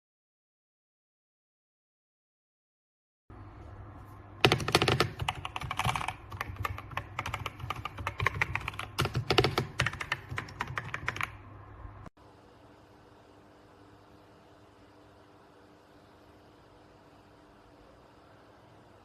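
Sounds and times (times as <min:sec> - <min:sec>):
mechanical keyboard typing: 0:04.4 - 0:11.4.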